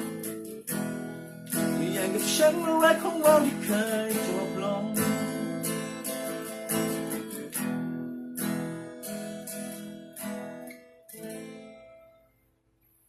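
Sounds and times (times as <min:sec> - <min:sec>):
acoustic guitar strumming chords: 0:00.0 - 0:12.4.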